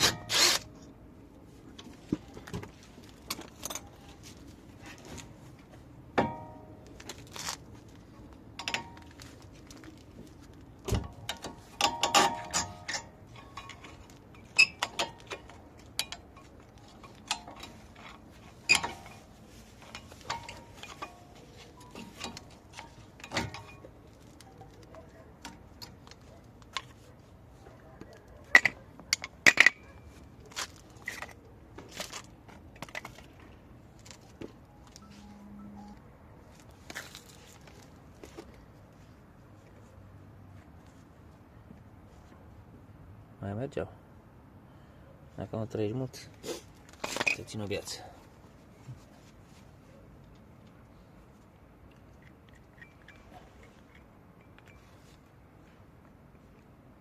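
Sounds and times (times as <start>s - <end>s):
metal tools clinking: 11.2s - 27.0s, 47.0s - 48.0s, 52.2s - 55.2s.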